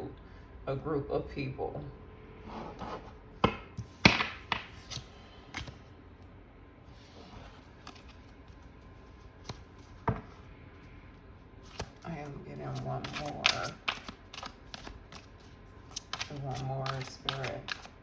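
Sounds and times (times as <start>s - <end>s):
cards tapping and flicking: 3.4s - 5.8s, 9.4s - 10.2s, 11.7s - 12.0s, 12.7s - 18.0s.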